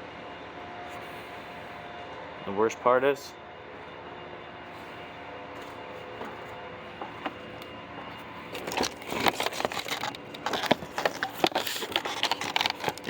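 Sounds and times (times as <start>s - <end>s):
steady hum: 0.0s - 13.0s
rotten wood crackling: 8.5s - 13.0s.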